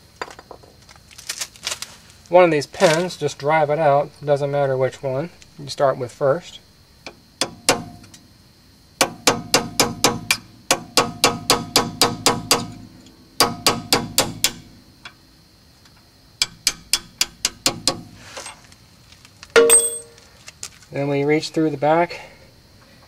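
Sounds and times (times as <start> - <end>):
hammer tapping metal punch: 16.4 - 18.0, 19.6 - 20.2.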